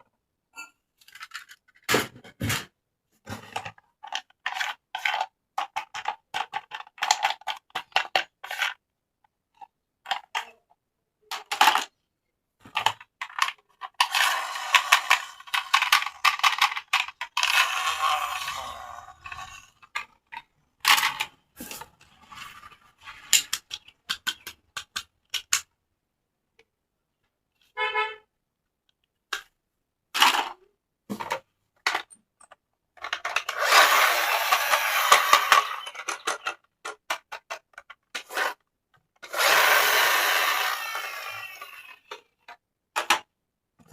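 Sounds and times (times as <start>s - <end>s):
plastic clicks and taps: 23.3s - 25.7s.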